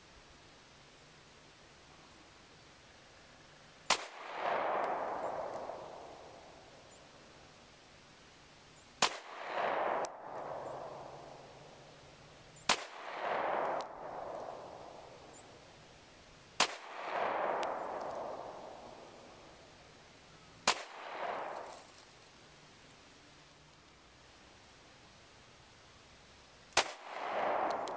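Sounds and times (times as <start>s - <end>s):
pistol shots with rolling echo: 3.9s - 6.8s, 9.0s - 11.9s, 12.6s - 15.7s, 16.6s - 19.6s, 20.6s - 21.8s, 26.8s - 27.9s.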